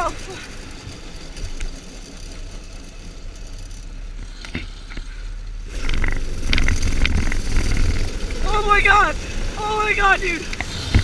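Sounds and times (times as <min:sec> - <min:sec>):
dirt bike engine running: 0:00.0 - 0:11.0
sharp clacks and rattles: 0:00.0 - 0:11.0.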